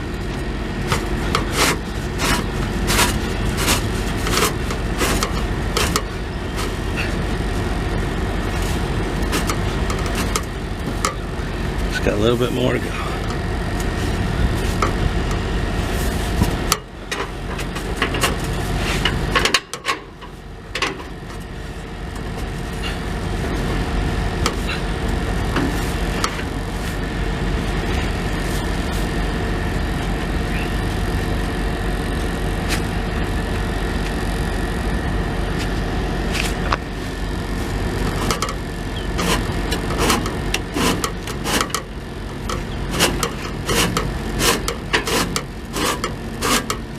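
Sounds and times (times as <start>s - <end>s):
truck engine idling: 0.0s - 46.9s
knocks clicks and scraping on pipe: 0.3s - 7.3s, 8.5s - 11.3s, 13.2s - 15.4s, 16.0s - 21.5s, 24.4s - 24.8s, 38.0s - 46.9s.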